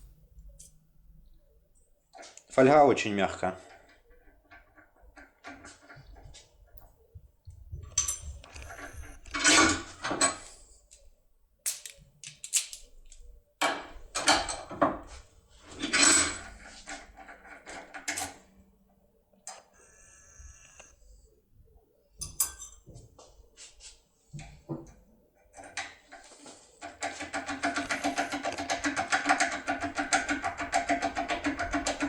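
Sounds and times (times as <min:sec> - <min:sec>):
metallic clicks and rattles of lock: 0:11.6 - 0:14.8, 0:16.0 - 0:18.4.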